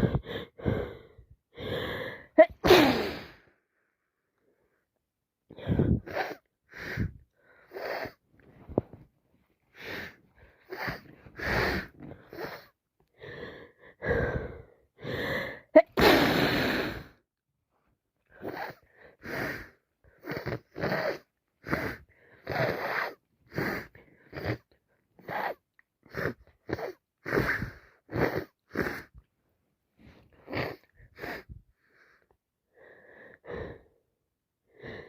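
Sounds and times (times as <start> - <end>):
woman sniffing congested nose: 2.4 - 3.4, 9.8 - 12.7, 15.8 - 17.1, 18.4 - 24.6, 25.2 - 29.1.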